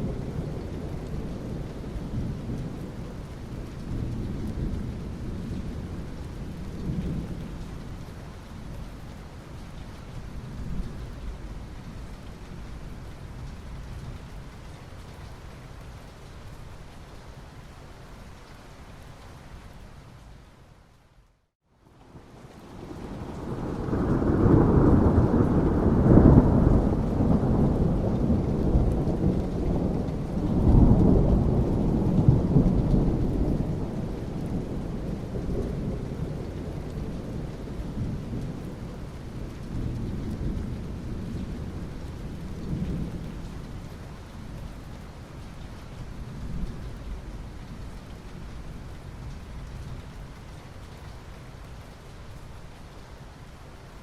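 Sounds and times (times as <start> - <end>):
steady rain: 0.0 - 54.0
thunder rumbling: 22.7 - 44.6.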